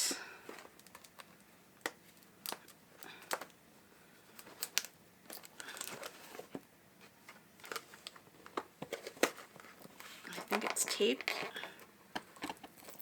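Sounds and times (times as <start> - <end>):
packaging crinkling and rustling: 0.5 - 3.6, 4.3 - 13.0.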